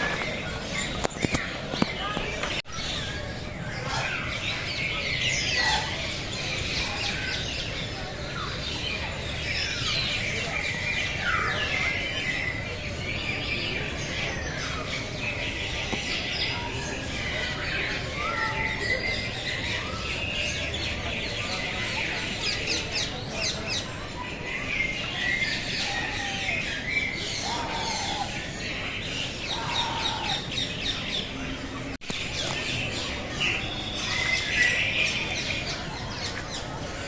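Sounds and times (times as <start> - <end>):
birds chirping and squawking: 0.0 - 37.0.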